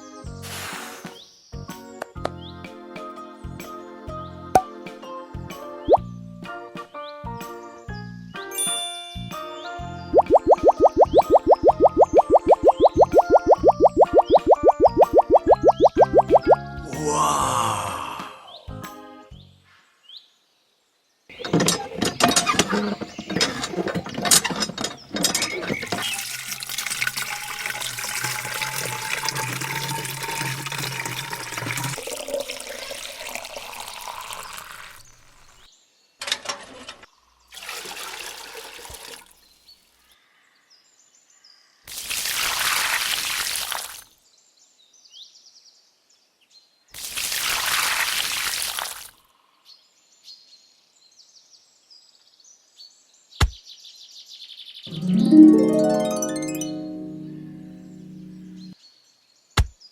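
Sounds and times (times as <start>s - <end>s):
water pouring and splashing: 10.1s - 16.6s, 25.6s - 35.6s, 37.5s - 39.6s, 41.9s - 44.1s, 47.0s - 49.2s.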